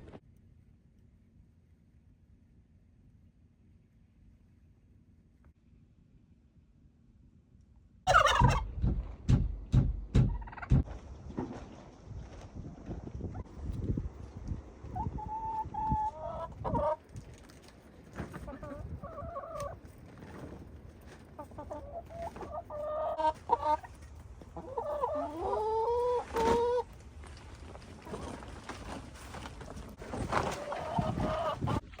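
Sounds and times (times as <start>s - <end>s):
rising chicken call: 8.1s - 8.7s
chickens clucking: 8.1s - 8.8s, 14.8s - 26.9s, 30.1s - 32.0s.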